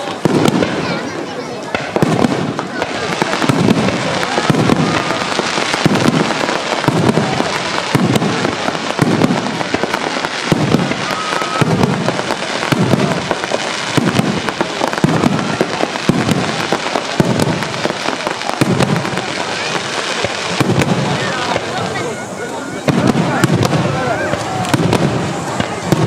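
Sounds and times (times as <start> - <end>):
fireworks crackling pops: 0.0 - 26.0
fireworks shells booming: 0.0 - 26.0.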